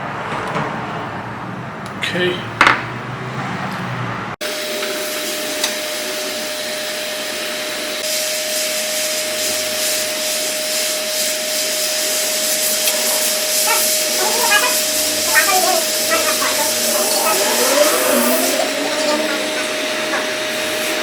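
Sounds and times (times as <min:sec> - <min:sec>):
fan whine: 0:04.4 - 0:21.0
hot air blower hissing: 0:04.4 - 0:21.0.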